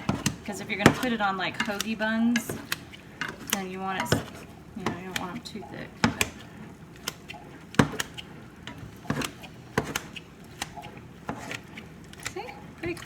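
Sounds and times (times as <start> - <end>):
utensil chopping against a pan: 0.0 - 13.0.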